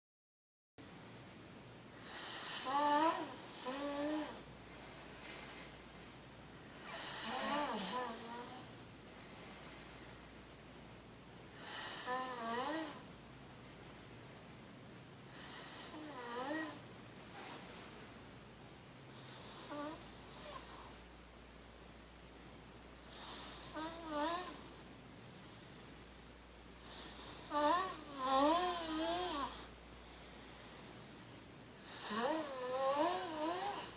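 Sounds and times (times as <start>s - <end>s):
person snoring: 2.0s - 4.5s, 6.8s - 8.7s, 11.6s - 13.1s, 15.3s - 16.8s, 19.3s - 20.9s, 23.1s - 24.7s, 26.8s - 29.7s, 31.8s - 33.9s.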